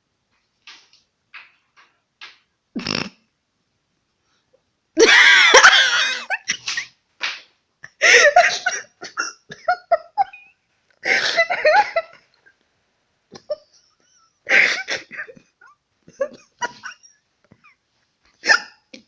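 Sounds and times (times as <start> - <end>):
person giggling and laughing: 5.0 - 7.0, 7.8 - 12.3, 13.3 - 17.8.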